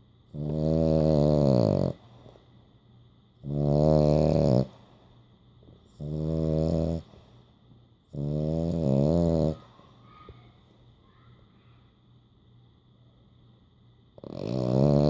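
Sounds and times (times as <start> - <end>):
dog snoring: 0.3 - 2.1, 3.4 - 5.0, 5.9 - 7.2, 8.1 - 9.7, 14.2 - 15.0.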